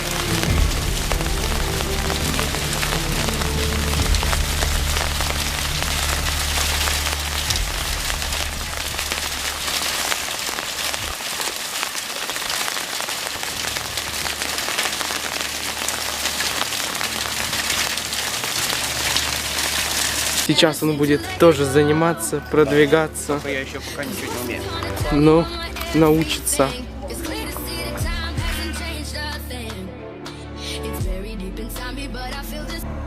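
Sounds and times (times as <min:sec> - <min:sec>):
low steady hum: 0:00.0 - 0:11.2
steady rain falling: 0:00.0 - 0:29.3.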